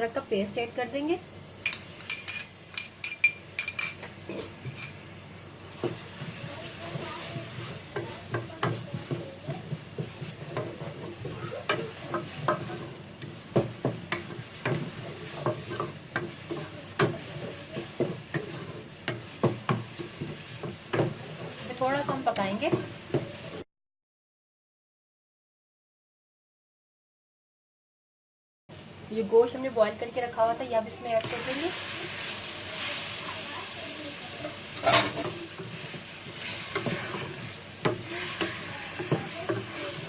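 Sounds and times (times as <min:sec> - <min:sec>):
onions sizzling in oil: 0:00.0 - 0:23.6, 0:28.7 - 0:40.0
metal spoon clinking: 0:01.6 - 0:05.0
spoon scraping a pot: 0:34.8 - 0:40.0.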